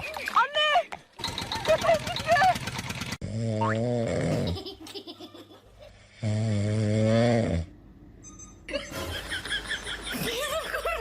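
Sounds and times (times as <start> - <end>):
loud droning snores: 3.2 - 4.6, 6.1 - 7.8.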